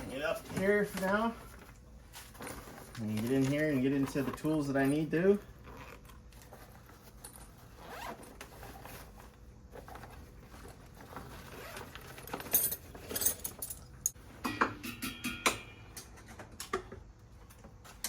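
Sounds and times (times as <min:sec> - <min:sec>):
faint handling rustle: 0:00.0 - 0:13.8
zipper being pulled open: 0:05.6 - 0:06.5, 0:07.7 - 0:09.2, 0:11.1 - 0:12.1.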